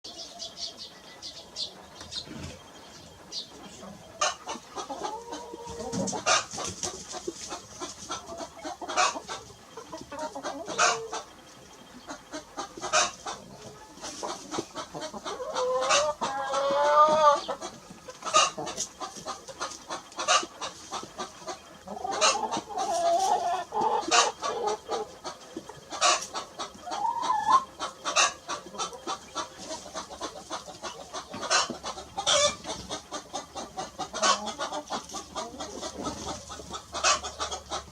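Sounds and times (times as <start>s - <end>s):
hen clucking: 0.1s - 37.9s.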